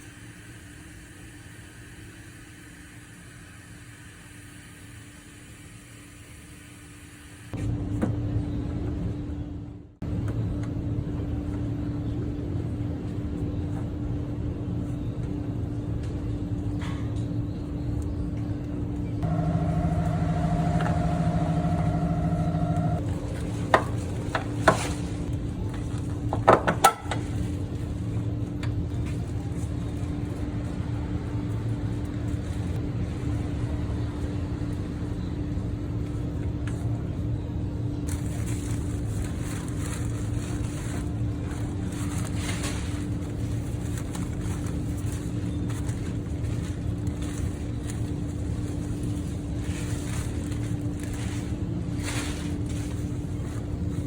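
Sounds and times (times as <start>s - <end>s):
car engine running: 19.2s - 25.2s.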